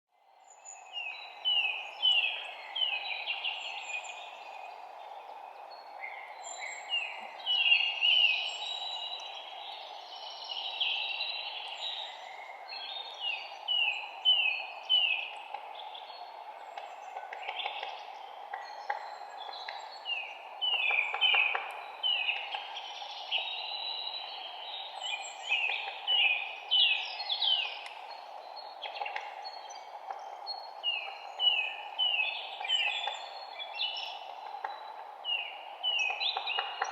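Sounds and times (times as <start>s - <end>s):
songbirds singing: 0.2s - 36.9s
steady low background noise: 0.2s - 36.9s.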